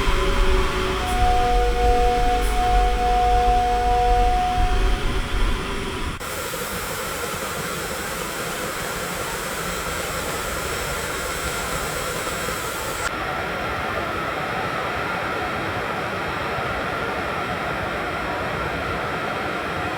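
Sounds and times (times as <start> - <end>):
low rumble: 0.0 - 6.2
bright high hiss: 0.0 - 13.1
steady room hiss: 0.0 - 14.6.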